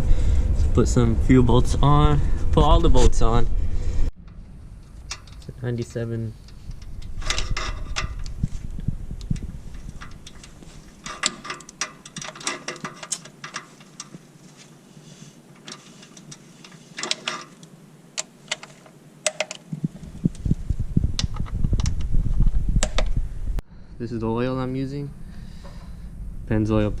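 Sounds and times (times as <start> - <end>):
low rumble: 0.0 - 11.5, 19.8 - 27.0.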